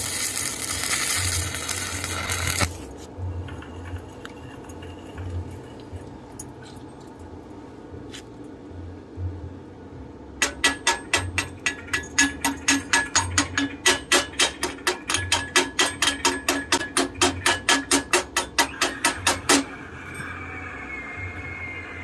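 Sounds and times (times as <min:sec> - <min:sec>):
hammer strikes on metal: 0:10.4 - 0:19.8.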